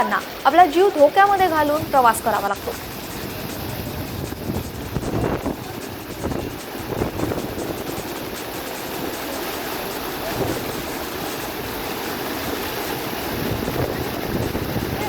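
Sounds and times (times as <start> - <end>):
flooded river water rushing: 0.0 - 15.0.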